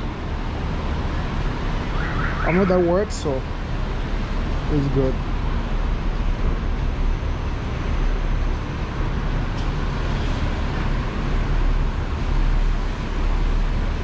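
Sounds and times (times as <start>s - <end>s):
road traffic rumble and hiss: 0.0s - 14.0s.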